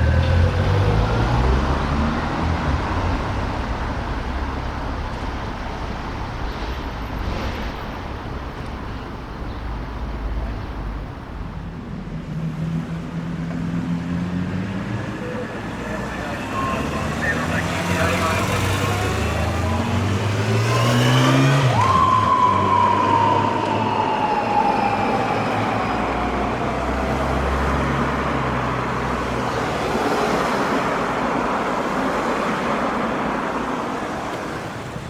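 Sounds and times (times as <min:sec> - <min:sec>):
road traffic noise: 0:00.0 - 0:35.0
motorcycle siren blast: 0:16.4 - 0:28.3
vehicle engine revving up: 0:16.8 - 0:22.8.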